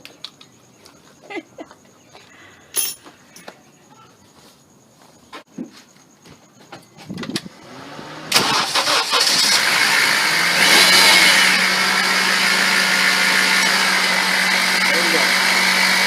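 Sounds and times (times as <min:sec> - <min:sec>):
car engine starting and idling: 0:07.4 - 0:16.0.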